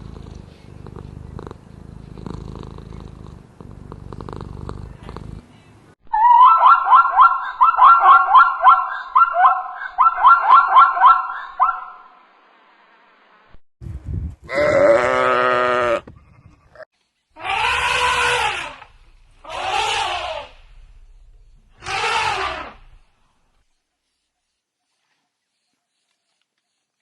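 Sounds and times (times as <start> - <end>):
cat purring: 0.0 - 5.6
bleat-like call: 17.4 - 18.8.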